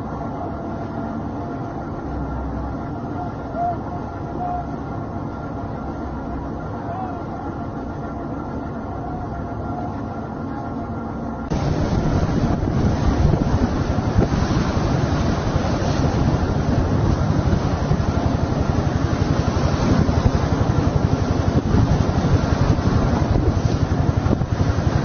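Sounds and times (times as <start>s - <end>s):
boat noise: 0.0s - 25.0s
waves: 0.0s - 25.0s
wind buffeting microphone: 11.5s - 25.0s.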